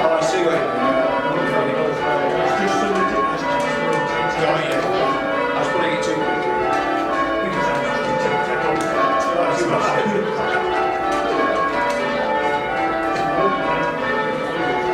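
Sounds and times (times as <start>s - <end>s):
church bells pealing: 0.0s - 14.9s.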